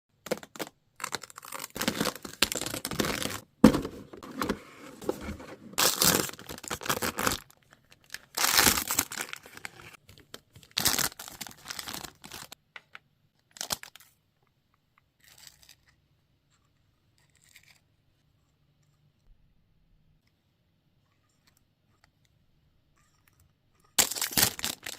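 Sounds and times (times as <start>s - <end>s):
packaging tearing and crinkling: 0.3s - 3.4s, 5.8s - 10.0s, 10.6s - 12.6s, 24.0s - 24.9s.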